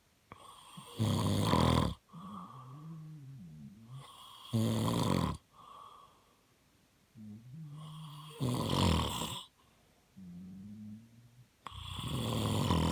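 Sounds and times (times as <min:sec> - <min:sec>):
man snoring: 0:00.4 - 0:05.4, 0:07.2 - 0:09.5, 0:10.2 - 0:12.9.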